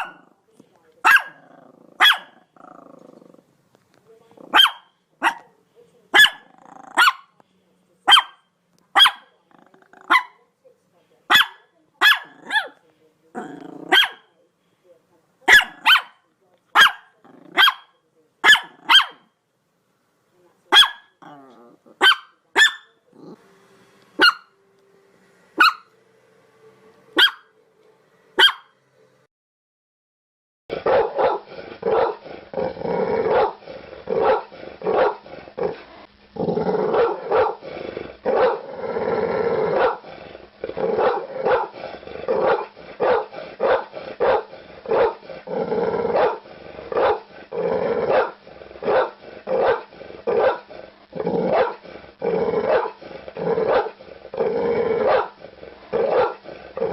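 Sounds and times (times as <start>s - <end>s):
dog barking: 0.0s - 0.4s, 1.0s - 2.4s, 4.5s - 7.4s, 8.1s - 9.3s, 10.0s - 10.4s, 11.3s - 12.8s, 13.9s - 14.3s, 15.5s - 19.3s, 20.7s - 21.2s, 21.9s - 23.0s, 24.2s - 24.5s, 25.6s - 25.9s, 27.2s - 27.5s, 28.4s - 28.7s, 30.8s - 32.2s, 33.3s - 33.6s, 34.2s - 35.2s, 36.9s - 37.6s, 38.3s - 38.6s, 39.8s - 40.0s, 41.0s - 41.7s, 42.4s - 45.2s, 46.1s - 46.4s, 47.0s - 47.3s, 48.1s - 50.7s, 51.5s - 51.8s, 52.7s - 53.0s, 53.6s - 54.0s, 55.0s - 55.4s, 56.0s - 56.4s.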